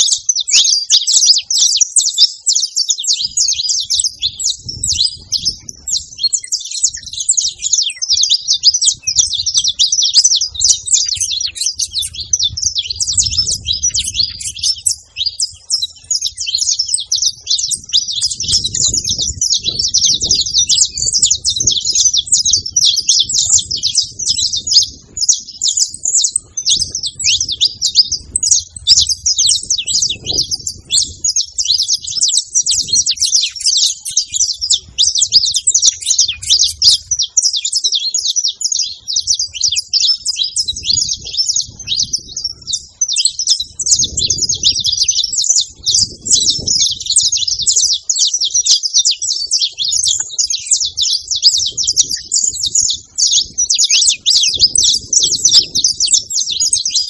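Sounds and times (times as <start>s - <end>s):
finches singing rapid chirps: 0.0s - 57.0s.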